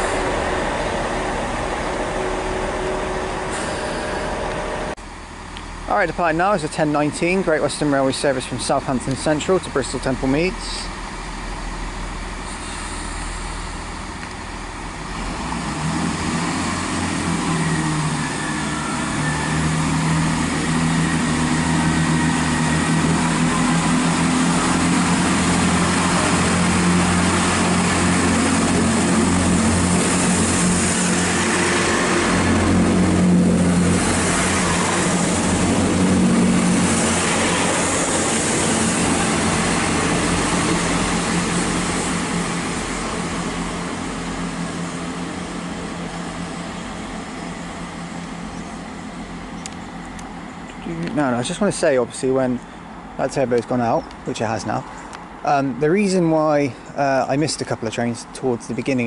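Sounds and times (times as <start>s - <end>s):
diesel train engines droning: 0.0s - 59.0s
hiss: 12.4s - 13.9s.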